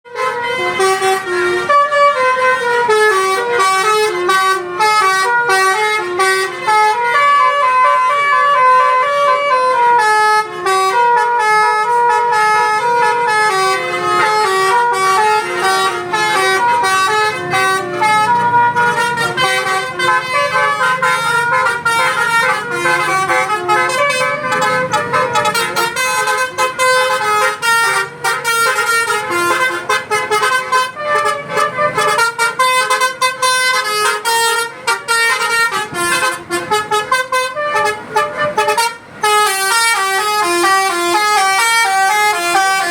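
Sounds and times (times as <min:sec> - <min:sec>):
multi-tone bus horn melody: 0:00.0 - 0:42.9.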